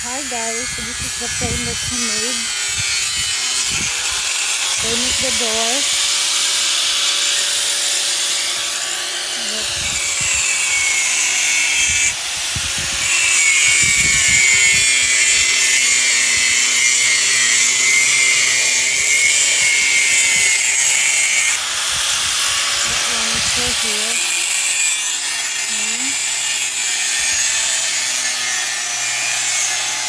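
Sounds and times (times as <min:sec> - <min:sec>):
power tool whining: 0:00.0 - 0:30.0.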